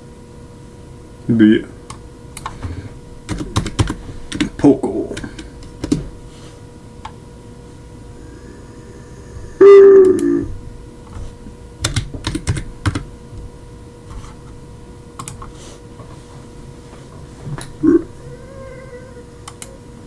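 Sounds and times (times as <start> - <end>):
keyboard typing: 1.9 - 6.2, 11.1 - 13.2.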